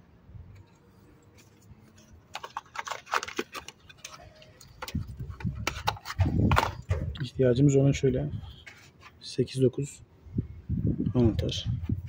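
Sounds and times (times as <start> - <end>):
rubbing and handling noise: 0.5 - 7.0, 8.3 - 9.6.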